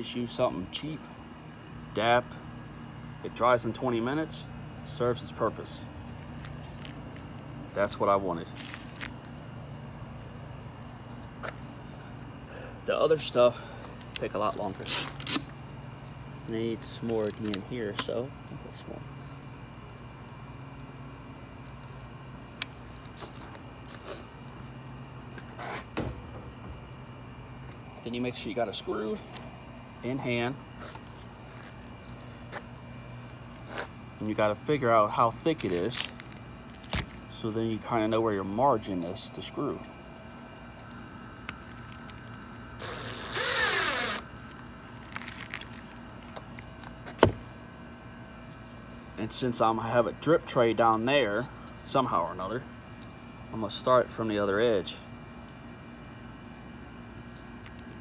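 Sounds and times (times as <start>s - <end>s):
steady low hum: 0.0s - 58.0s
handling sounds: 22.7s - 28.1s
power drill driving a screw: 42.8s - 44.2s.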